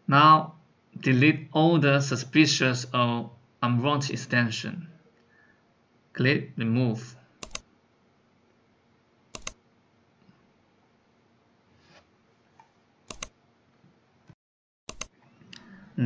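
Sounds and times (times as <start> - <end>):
computer mouse clicks: 7.4 - 7.6, 9.3 - 9.6, 12.6 - 13.3, 14.9 - 15.1.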